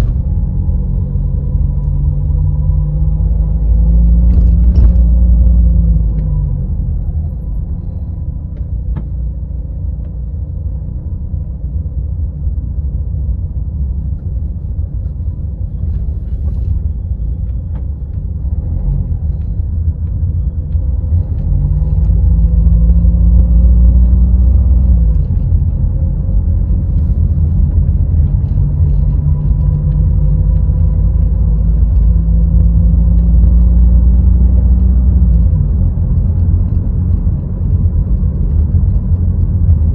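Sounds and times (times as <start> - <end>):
car engine and road noise: 0.0 - 39.9.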